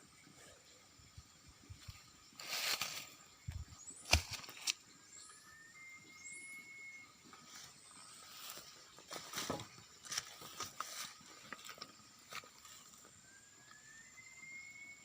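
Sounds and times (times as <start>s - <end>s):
night insects droning: 0.0s - 15.0s
whistle-like rising tone: 5.2s - 7.2s, 13.2s - 15.0s.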